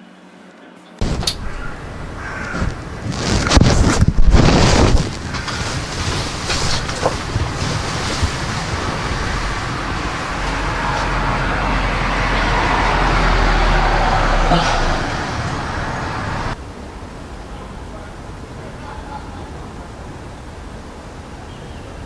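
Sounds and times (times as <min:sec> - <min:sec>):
road traffic noise: 0:00.9 - 0:22.0
vehicle passing: 0:04.2 - 0:16.6.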